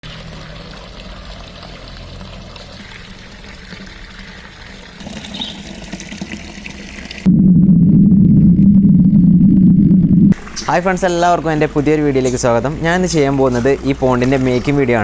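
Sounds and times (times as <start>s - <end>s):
fountain water pouring and trickling: 0.0s - 7.3s.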